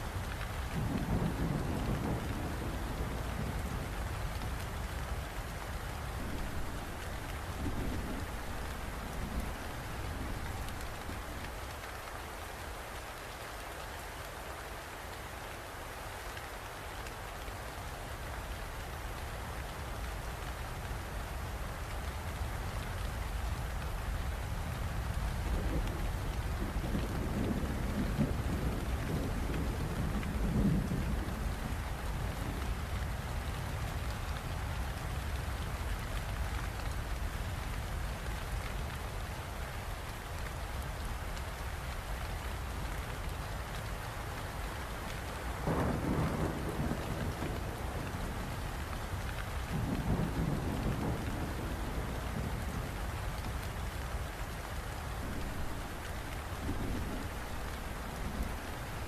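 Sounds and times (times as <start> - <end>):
steady rain: 0.0 - 59.0
thunder rumbling: 6.2 - 11.6, 25.4 - 32.7, 45.3 - 54.0, 55.1 - 59.0.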